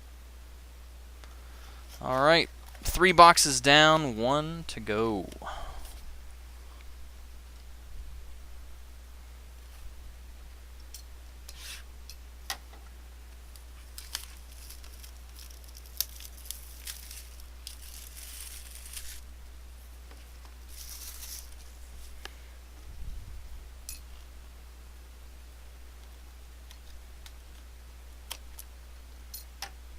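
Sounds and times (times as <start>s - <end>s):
low electrical hum: 0.0s - 29.9s
packaging tearing and crinkling: 13.8s - 19.2s, 20.7s - 21.7s.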